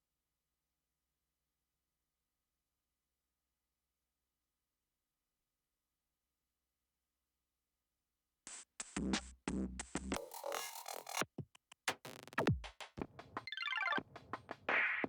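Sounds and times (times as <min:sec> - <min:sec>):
stuttering drum-machine hits: 0:10.1 - 0:11.2.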